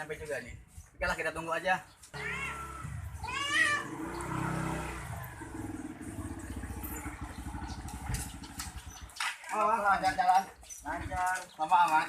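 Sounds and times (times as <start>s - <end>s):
cat meowing: 2.2s - 4.0s
motorcycle engine idling: 2.2s - 9.2s.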